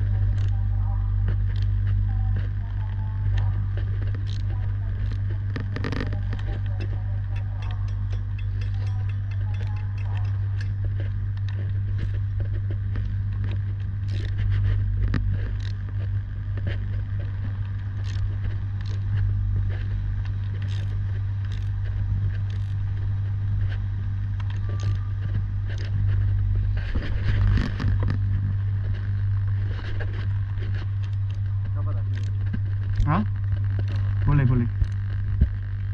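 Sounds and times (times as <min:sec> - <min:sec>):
low electrical hum: 0:00.0 - 0:35.9
tools scraping on metal: 0:06.8 - 0:10.9.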